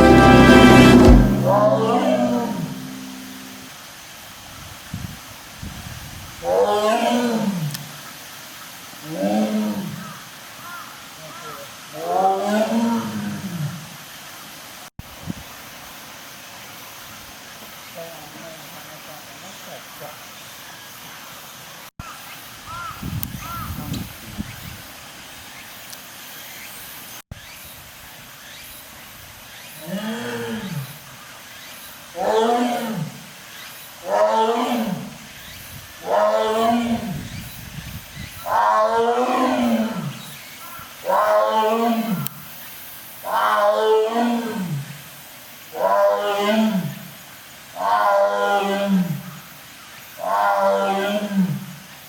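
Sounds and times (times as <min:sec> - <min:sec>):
big cat moaning call: 0:36.0 - 0:37.2.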